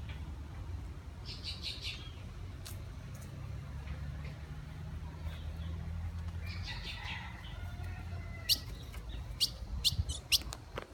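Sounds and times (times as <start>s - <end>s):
small birds chirping: 1.2s - 2.8s, 4.2s - 10.8s.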